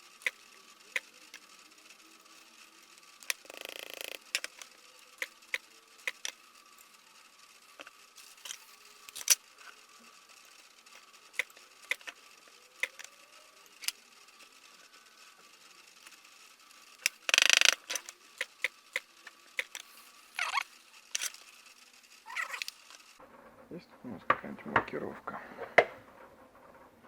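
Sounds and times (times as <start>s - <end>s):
clicks and taps of small parts: 3.2s - 6.4s, 12.8s - 13.1s, 17.0s - 19.9s.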